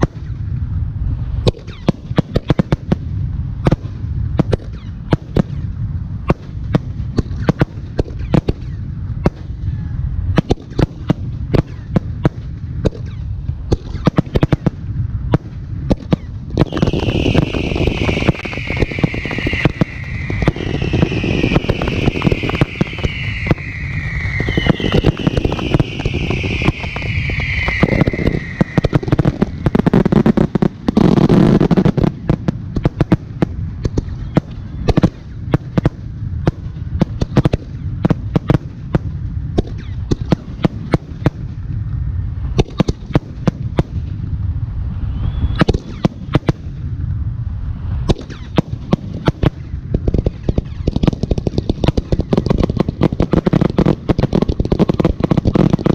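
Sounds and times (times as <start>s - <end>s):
fireworks launching and bursting: 0.0s - 9.6s, 10.2s - 55.9s
falling firework whistles: 16.1s - 31.7s, 39.6s - 40.4s, 44.8s - 46.6s, 47.8s - 53.7s
deep rumbling: 17.1s - 31.4s.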